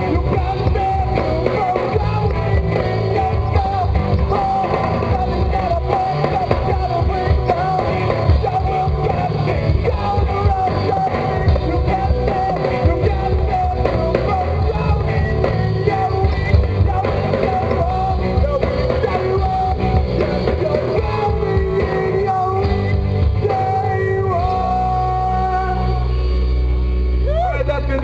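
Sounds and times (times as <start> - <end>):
person singing: 0.0 - 26.2
drums: 0.0 - 28.0
electric guitar: 0.0 - 28.0.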